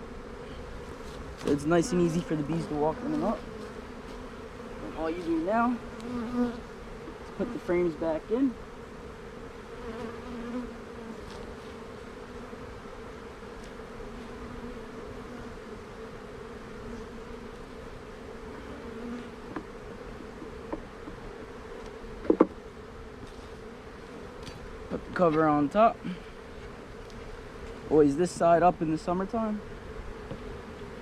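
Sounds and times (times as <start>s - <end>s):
bees buzzing: 0.0s - 31.0s
wooden knocks: 22.2s - 22.6s.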